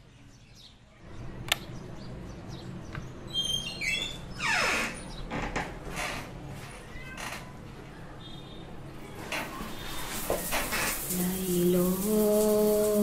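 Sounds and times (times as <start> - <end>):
birds chirping: 0.0 - 5.4.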